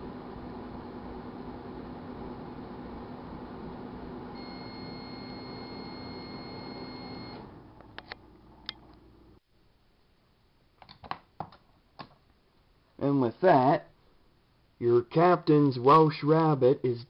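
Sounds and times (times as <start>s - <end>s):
microwave oven humming: 0.0s - 9.4s
long continuous beep: 4.3s - 7.4s.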